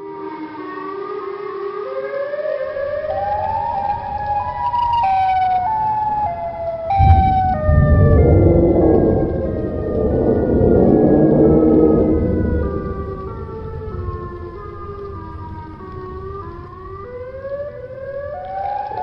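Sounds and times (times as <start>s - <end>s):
siren-like howl: 0.0s - 19.0s
loud rumbling static: 3.0s - 19.0s.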